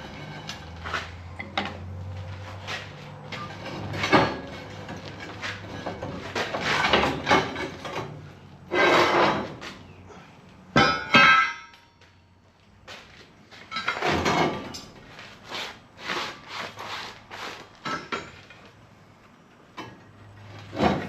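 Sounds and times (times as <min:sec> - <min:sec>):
rattling scrape of steel: 0:02.5 - 0:09.7.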